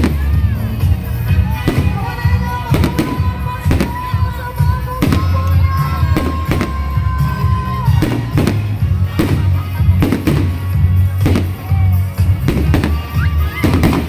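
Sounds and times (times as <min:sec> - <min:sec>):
fireworks banging: 0:00.0 - 0:14.0
loud music with heavy bass: 0:00.0 - 0:14.0.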